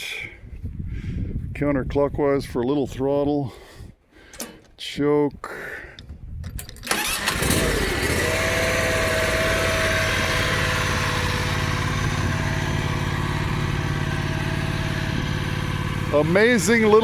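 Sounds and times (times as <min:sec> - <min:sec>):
gasoline engine running: 0:06.9 - 0:17.0.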